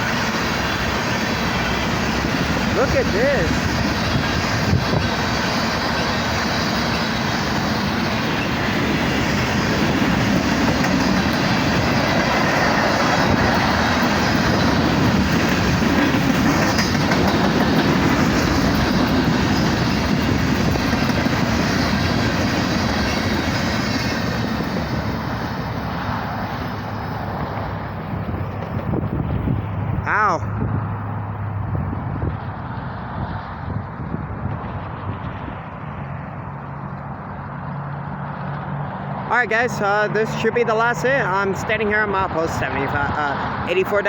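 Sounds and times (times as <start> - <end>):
wheels clacking over rail joints: 0.0 - 29.1
freight train rolling past: 0.0 - 44.0.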